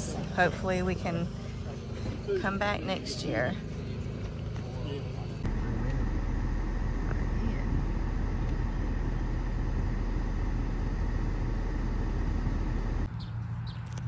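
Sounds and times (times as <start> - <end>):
vehicle driving rumble: 5.4 - 13.1.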